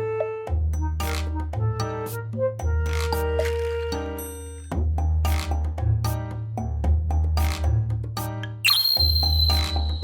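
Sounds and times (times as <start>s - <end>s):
high ringing chime tone: 8.7s - 10.0s.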